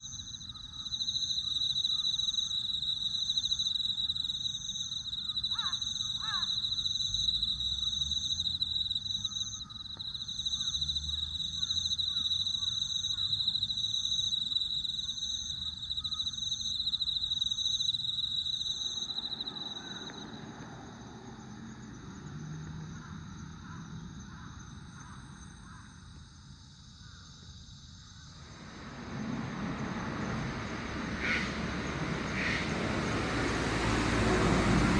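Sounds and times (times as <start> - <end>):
insect high trill: 0.0 - 24.5
insect chirping in pulses: 0.0 - 34.9
distant low rumbling: 28.3 - 34.9.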